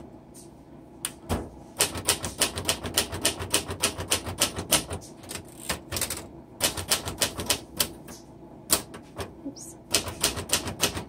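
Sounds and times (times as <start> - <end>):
typewriter keys clacking: 9.9 - 11.0.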